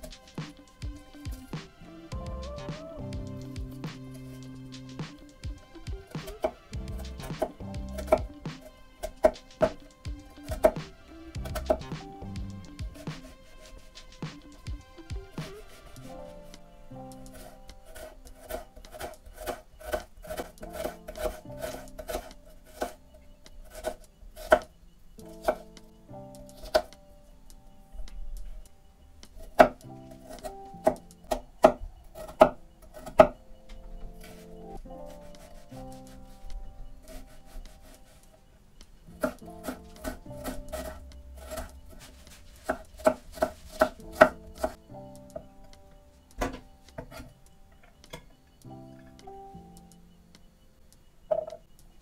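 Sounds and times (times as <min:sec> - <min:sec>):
soft background music: 0:00.0 - 0:52.0
knife chopping on cutting board: 0:39.2 - 0:44.7.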